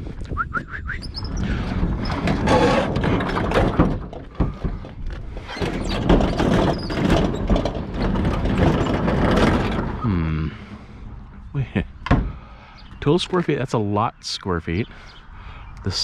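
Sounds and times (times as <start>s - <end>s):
continuous low rumble: 0.0s - 16.0s
scrap clattering and thudding: 1.1s - 12.4s.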